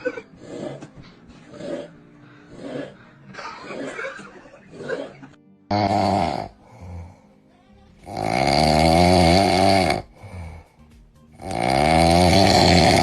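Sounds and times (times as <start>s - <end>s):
person snoring loudly: 0.0s - 7.3s, 8.0s - 13.0s
quiet breath: 0.3s - 3.4s, 6.5s - 7.6s, 10.1s - 11.1s.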